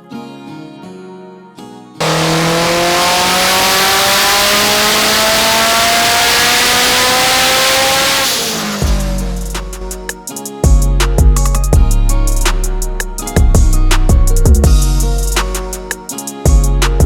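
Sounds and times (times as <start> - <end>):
car engine under load: 2.0 - 10.0
music with deep bass beat: 8.6 - 17.0.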